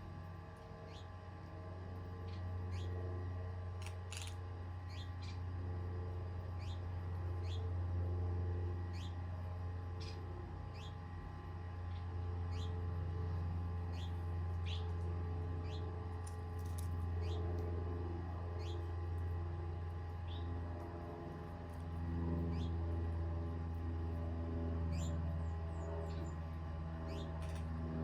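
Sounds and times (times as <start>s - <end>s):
steady low hum: 0.0s - 28.0s
small bird chirping: 0.9s - 1.1s, 2.3s - 2.9s, 3.8s - 4.3s, 4.9s - 5.4s, 6.6s - 7.7s, 8.9s - 9.2s, 10.0s - 11.0s, 11.9s - 12.8s, 13.9s - 14.9s, 15.6s - 15.9s, 18.6s - 18.9s, 24.9s - 25.2s, 27.1s - 27.6s.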